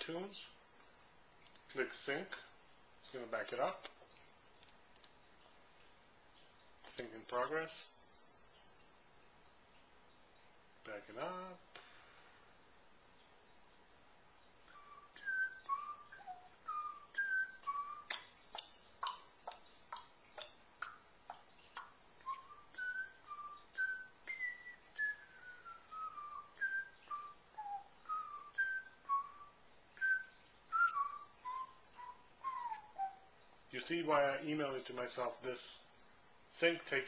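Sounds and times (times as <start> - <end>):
person whistling a tune: 14.7 - 18.2, 22.2 - 33.3.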